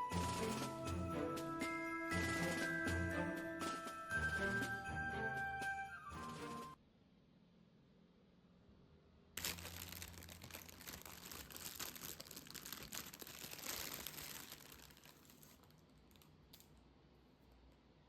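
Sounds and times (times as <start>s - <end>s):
wrapping crinkling and rustling: 0.0s - 1.2s, 9.4s - 16.8s.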